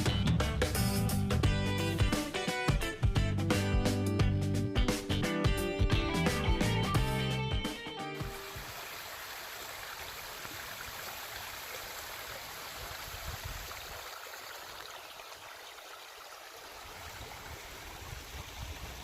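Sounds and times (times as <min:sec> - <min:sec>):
creek water flowing: 0:08.2 - 0:19.0.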